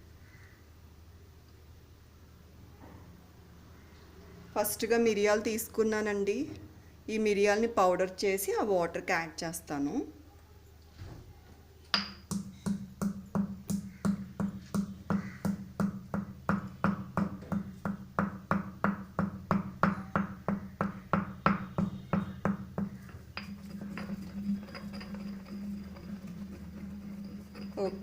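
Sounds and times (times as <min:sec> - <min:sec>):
pestle pounding in a mortar: 0:12.0 - 0:28.0.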